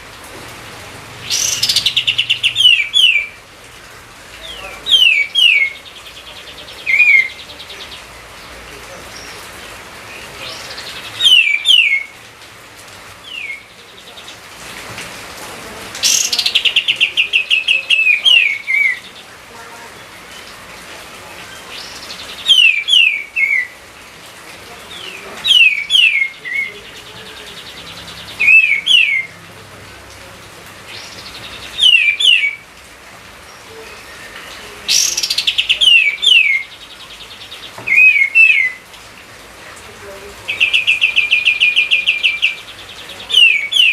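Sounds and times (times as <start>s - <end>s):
songbird whistling: 1.3s - 3.3s, 11.2s - 12.1s, 13.3s - 13.7s, 21.8s - 23.8s, 28.4s - 29.3s, 31.8s - 32.6s, 37.8s - 38.8s.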